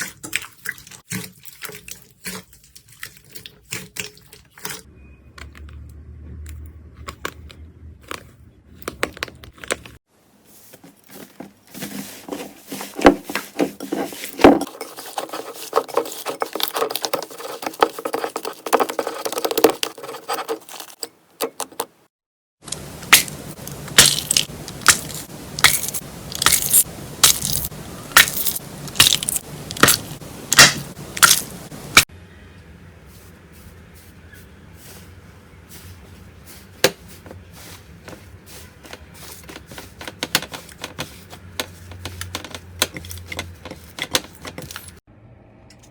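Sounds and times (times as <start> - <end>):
slime crackling and popping: 22.7 - 32.1.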